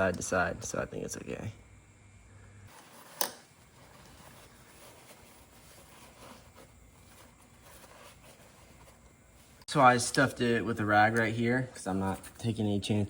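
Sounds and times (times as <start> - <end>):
rag rustling: 2.7 - 9.7.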